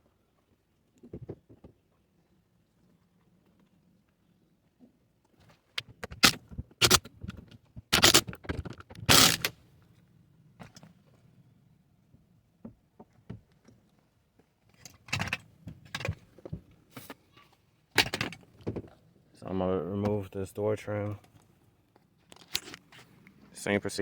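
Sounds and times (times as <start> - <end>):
clinks and scrapes of tools: 22.3 - 23.2.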